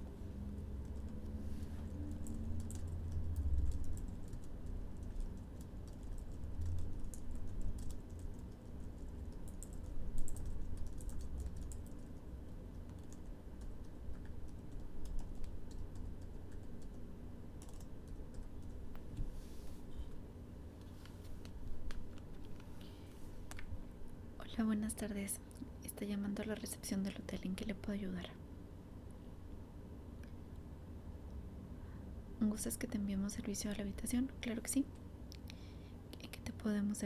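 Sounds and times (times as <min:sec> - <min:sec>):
typing on computer keyboard: 0:00.6 - 0:01.3, 0:01.9 - 0:17.0, 0:17.6 - 0:18.8.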